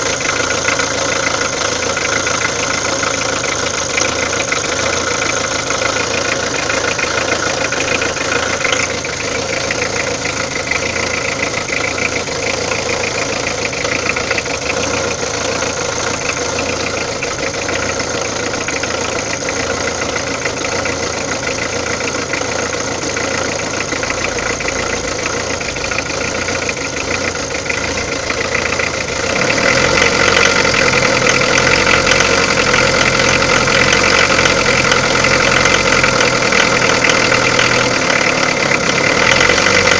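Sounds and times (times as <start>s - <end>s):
diesel engine clattering idle: 0.0s - 39.9s.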